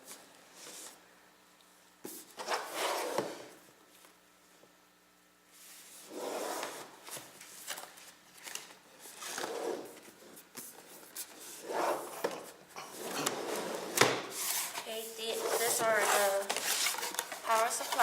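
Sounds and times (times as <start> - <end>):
cardboard packaging rubbing: 14.3 - 18.0.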